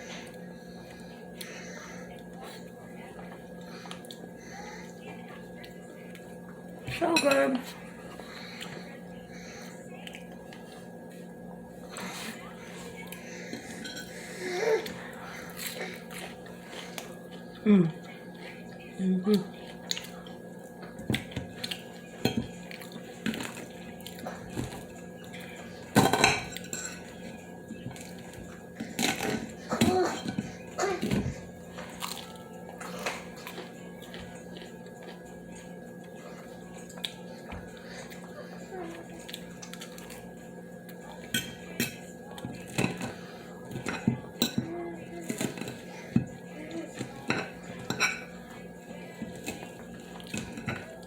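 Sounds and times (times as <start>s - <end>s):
cutlery scraping against a plate: 13.5s - 14.2s.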